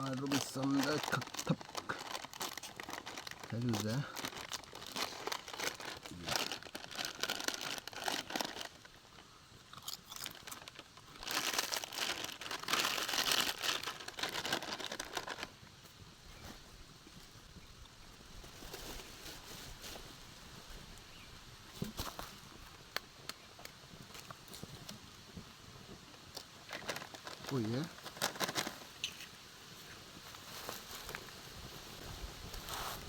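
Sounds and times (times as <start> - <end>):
plastic packet crinkling: 0.0 - 9.2, 9.8 - 15.5, 26.4 - 29.2.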